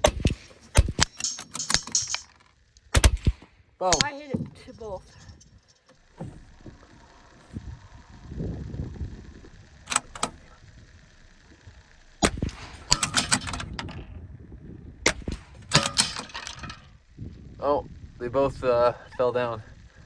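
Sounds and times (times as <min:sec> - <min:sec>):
rifle bolt clicks: 0:00.0 - 0:04.1
rifle shots cracking: 0:00.0 - 0:04.3, 0:11.2 - 0:13.8.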